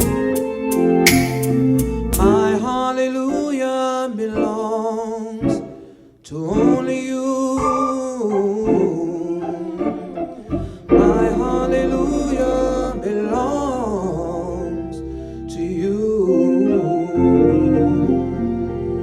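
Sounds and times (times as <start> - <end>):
gospel voices singing wordlessly: 2.2 - 19.0
sustained low instrumental notes: 8.6 - 19.0.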